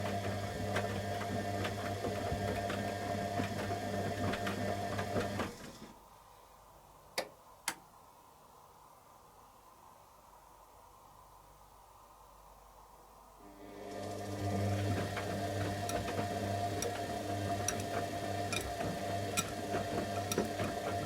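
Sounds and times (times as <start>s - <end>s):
washing machine motor humming: 0.0s - 5.8s, 13.4s - 21.0s.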